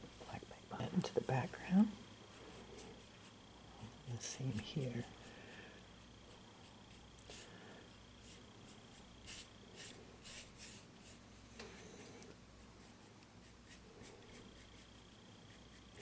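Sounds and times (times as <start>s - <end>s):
scratchy paintbrush strokes: 8.2s - 16.0s.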